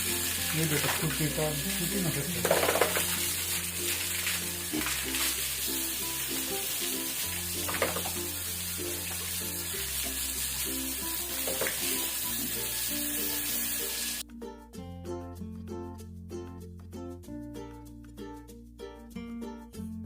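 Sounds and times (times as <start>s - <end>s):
running water hiss: 0.0s - 14.2s
music with bass and plucked chords: 0.0s - 20.0s.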